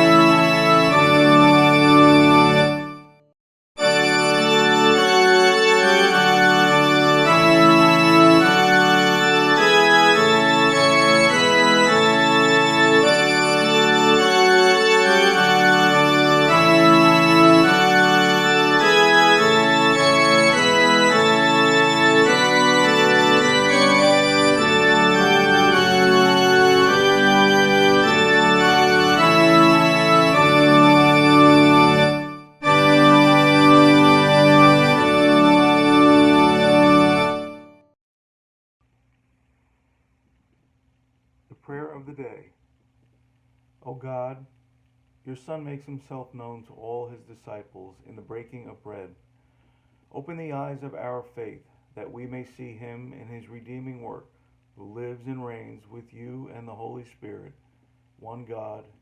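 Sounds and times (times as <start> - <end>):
organ playing sustained chords: 0.0 - 3.1, 3.8 - 37.8.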